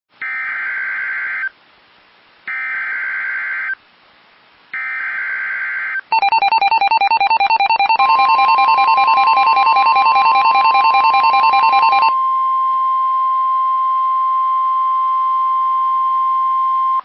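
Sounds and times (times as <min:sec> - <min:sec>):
two-pitch pulsing alert tone: 0:06.2 - 0:12.1.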